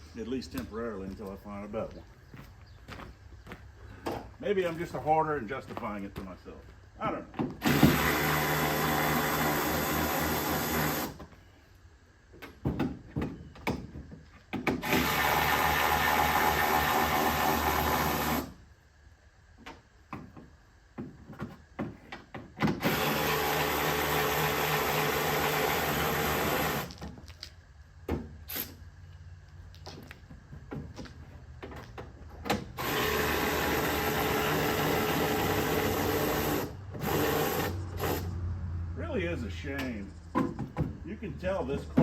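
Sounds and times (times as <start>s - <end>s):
hand-held power tool running: 7.6s - 11.2s, 14.8s - 18.5s, 22.8s - 26.9s, 32.8s - 38.3s.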